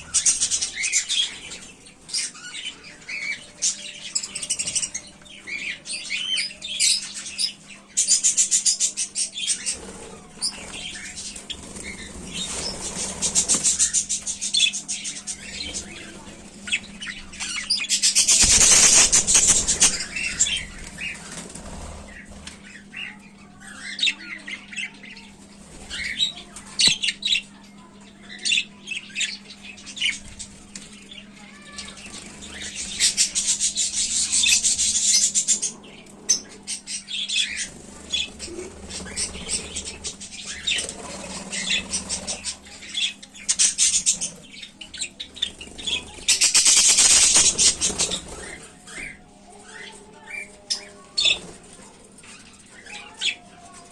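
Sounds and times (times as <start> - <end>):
wings flapping: 18.2 - 22.6.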